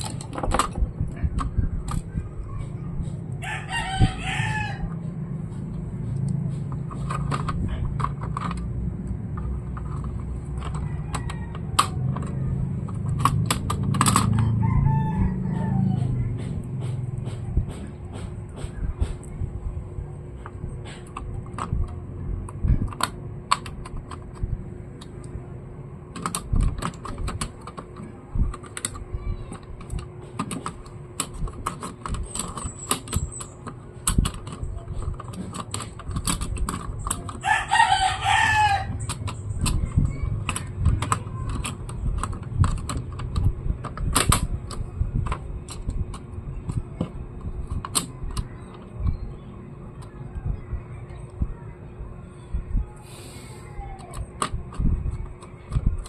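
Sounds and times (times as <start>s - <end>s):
laptop parts clicking and tapping: 0.0s - 3.2s, 4.7s - 14.6s, 20.4s - 25.4s, 26.1s - 49.2s, 54.0s - 56.0s
rooster crowing: 3.4s - 5.0s, 10.8s - 12.7s, 14.3s - 16.5s, 37.4s - 39.1s.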